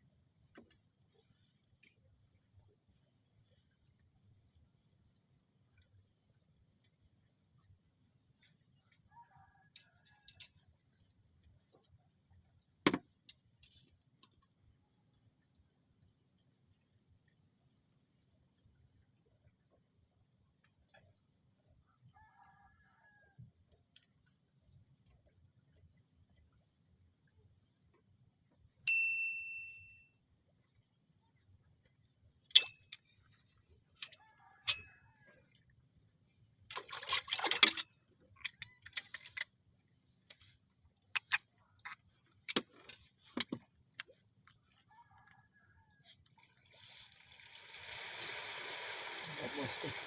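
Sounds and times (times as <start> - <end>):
metallic ding: 28.9 - 30.0
faint high-pitched whine: 47.1 - 50.0.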